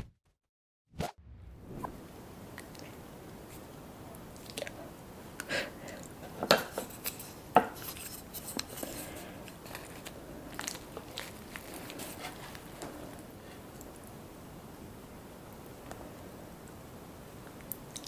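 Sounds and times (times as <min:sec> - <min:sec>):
soft rustling of food: 0:05.8 - 0:16.8.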